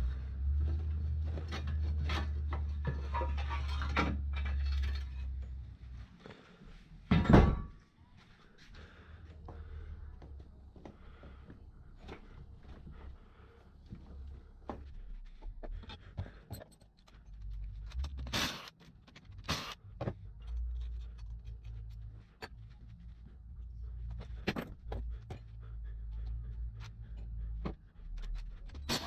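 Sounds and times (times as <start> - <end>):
metal tools clinking and scraping: 1.2 - 5.6, 28.1 - 29.0
low uneven rumble: 8.0 - 16.4, 19.8 - 28.8.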